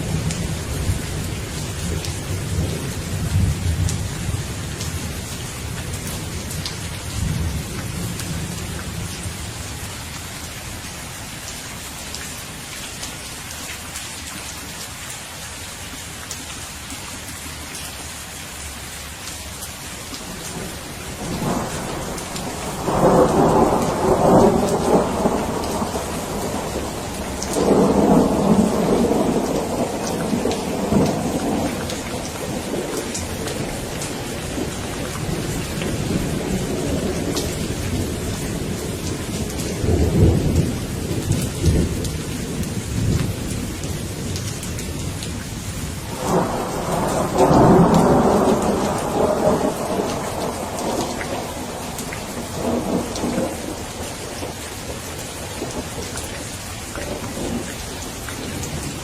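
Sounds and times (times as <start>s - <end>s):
steady rain falling: 0.0s - 59.0s
thunder rumbling: 20.3s - 43.2s, 46.0s - 56.1s.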